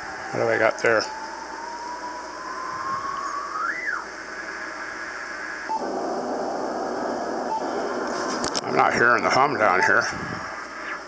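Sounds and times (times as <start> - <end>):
radio static hiss: 0.0 - 11.0
whistling tone drifting in pitch: 0.6 - 5.9, 7.4 - 8.1.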